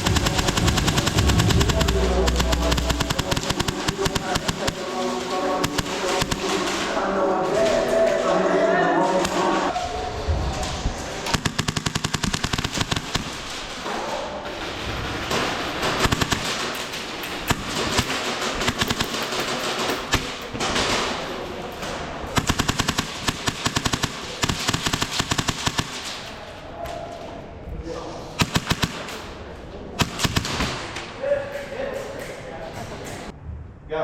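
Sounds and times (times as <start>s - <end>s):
airsoft guns firing bursts: 0.0s - 8.2s, 11.2s - 14.0s, 14.9s - 21.4s, 22.3s - 26.4s, 28.4s - 31.1s.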